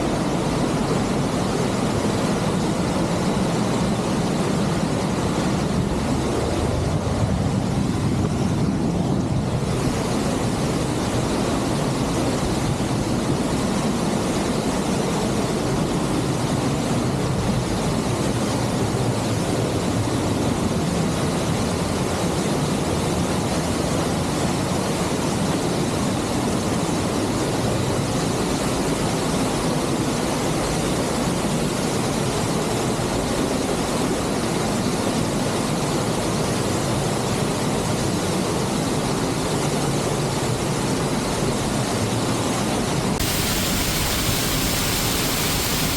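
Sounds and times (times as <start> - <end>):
waterfall pouring: 43.2 - 45.9.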